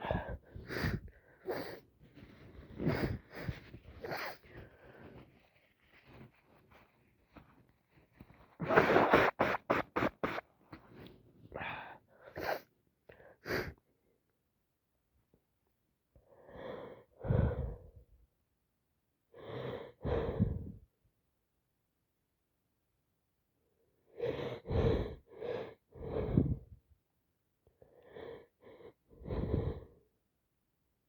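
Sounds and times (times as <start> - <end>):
person sneezing: 8.6 - 10.4
gasping breaths: 28.0 - 30.0.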